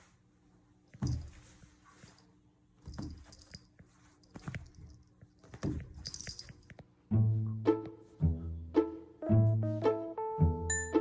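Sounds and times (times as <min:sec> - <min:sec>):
light jingling: 0:01.0 - 0:06.8.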